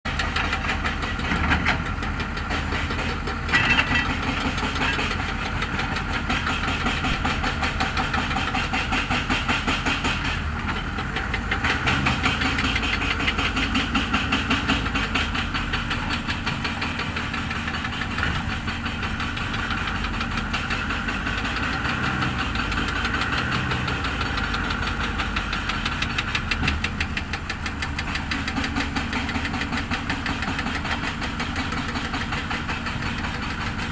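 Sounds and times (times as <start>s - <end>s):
heavy vehicle engine clattering: 0.0s - 33.9s.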